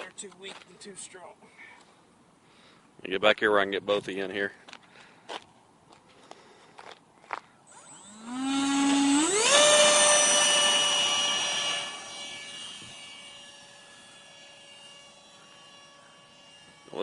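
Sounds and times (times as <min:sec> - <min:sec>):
electric ducted fan whine: 0:07.7 - 0:17.0.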